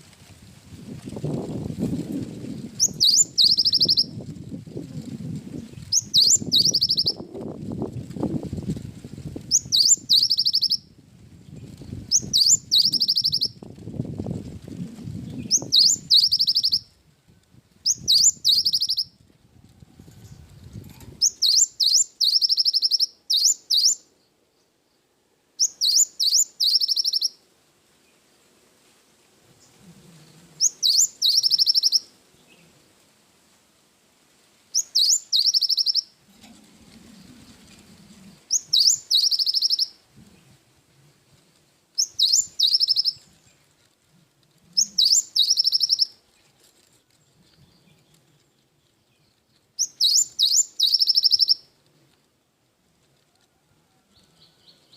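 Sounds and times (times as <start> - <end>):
bird singing: 2.8 - 4.2, 5.9 - 7.2, 9.5 - 10.8, 12.1 - 13.5, 15.4 - 16.8, 17.9 - 19.1, 21.2 - 24.0, 25.6 - 27.4, 30.6 - 32.0, 34.8 - 36.1, 38.5 - 39.9, 42.0 - 43.2, 44.8 - 46.1, 49.1 - 51.6.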